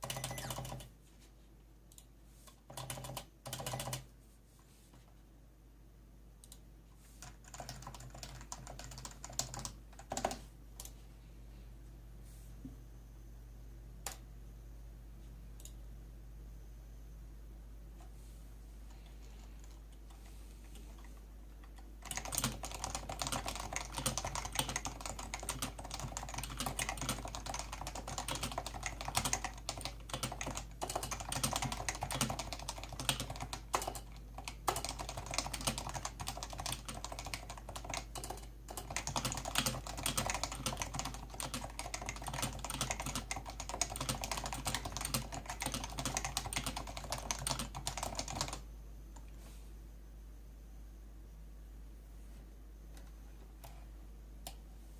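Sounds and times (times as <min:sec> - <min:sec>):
keyboard typing: 0:00.0 - 0:00.9, 0:01.9 - 0:04.1, 0:07.2 - 0:11.0, 0:18.9 - 0:49.3.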